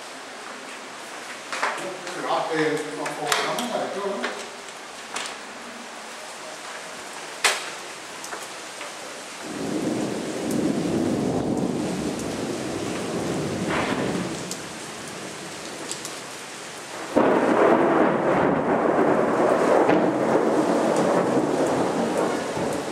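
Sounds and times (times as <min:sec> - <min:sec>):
rain falling: 0:00.0 - 0:22.9
loud crack of thunder: 0:09.4 - 0:14.6, 0:17.1 - 0:22.9
thunder rolling: 0:09.4 - 0:15.3, 0:16.9 - 0:22.9.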